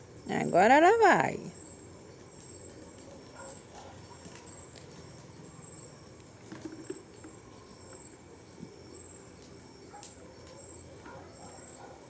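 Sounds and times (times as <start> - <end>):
small clicks and crackles: 2.0 - 8.2, 9.4 - 12.0.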